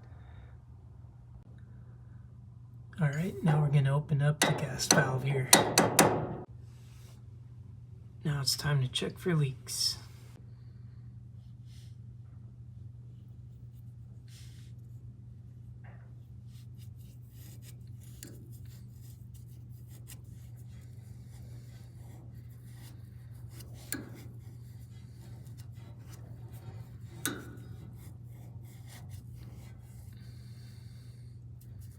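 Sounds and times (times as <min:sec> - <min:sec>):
steady low hum: 0:00.0 - 0:31.9
faint rubbing and handling: 0:16.4 - 0:31.9.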